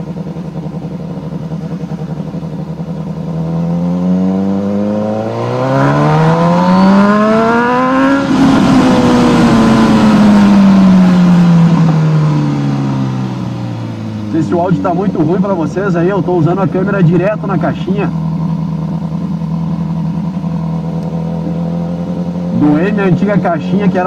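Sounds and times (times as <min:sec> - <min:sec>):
motorcycle engine accelerating: 0:00.0 - 0:24.0.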